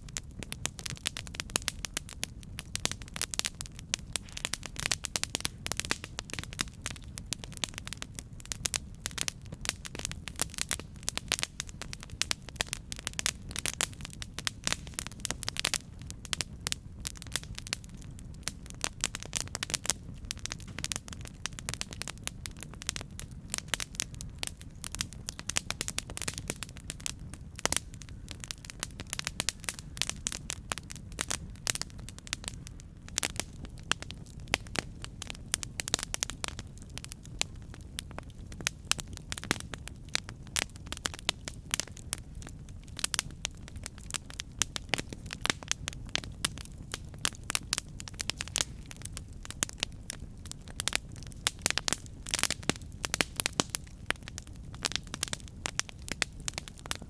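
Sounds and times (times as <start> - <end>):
campfire crackling and popping: 0.0 - 57.0
low rumble of flames: 0.0 - 57.0.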